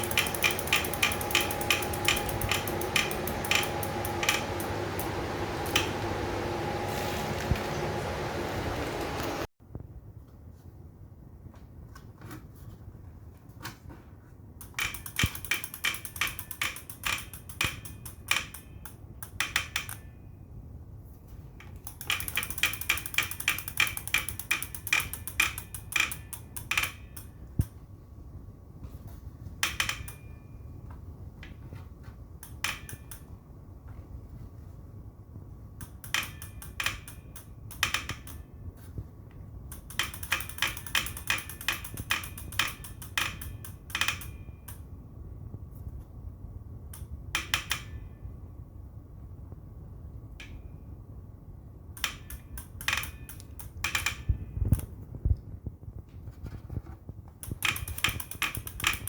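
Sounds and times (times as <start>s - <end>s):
trainer rapid clicking: 0.0s - 5.1s
faint hum: 0.0s - 15.8s.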